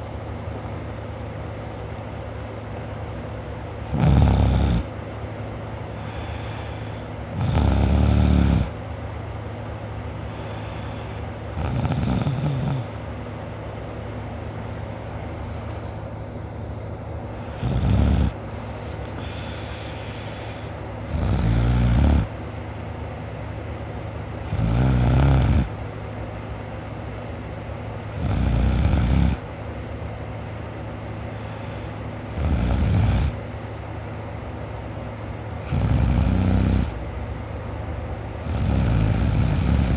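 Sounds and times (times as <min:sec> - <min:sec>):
steady low hum: 0:00.0 - 0:39.9
person snoring: 0:03.9 - 0:04.9, 0:06.0 - 0:08.8, 0:10.3 - 0:12.9, 0:17.4 - 0:18.4, 0:19.2 - 0:22.3, 0:24.5 - 0:25.7, 0:28.2 - 0:29.4, 0:32.3 - 0:33.4, 0:35.6 - 0:37.0, 0:38.4 - 0:39.9.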